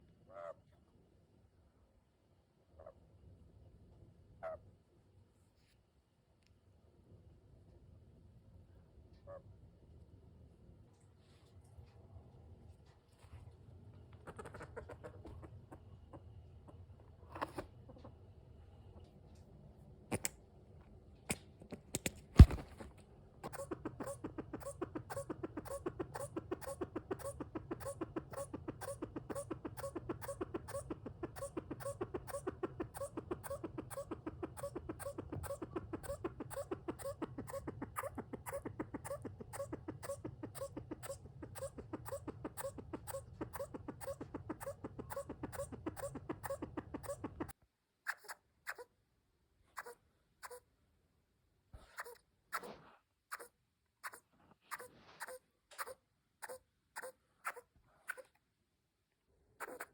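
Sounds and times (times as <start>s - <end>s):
bushbaby calling: 23.4s - 48.9s.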